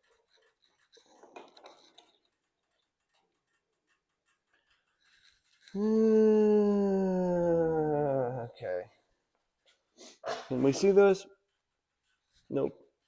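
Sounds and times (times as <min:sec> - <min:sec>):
falling held vocal note: 0:05.8 - 0:08.4.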